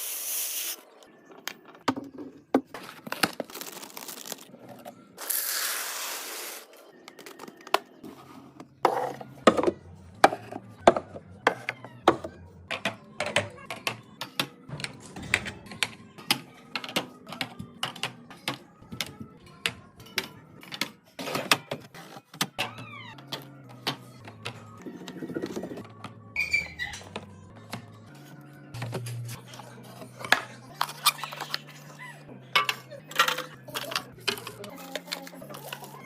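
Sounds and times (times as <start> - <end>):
household items clicking and clacking: 32.5 - 36.0.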